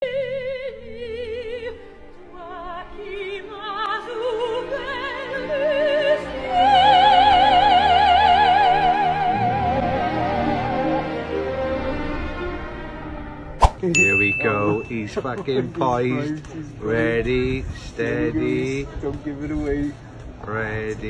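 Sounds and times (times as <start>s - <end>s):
operatic singing with vibrato: 0.0s - 15.0s.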